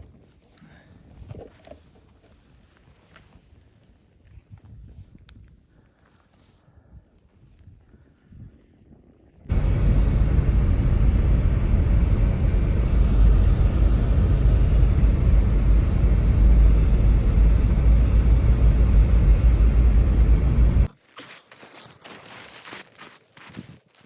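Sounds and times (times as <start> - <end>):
loud low rumbling: 9.5 - 20.9.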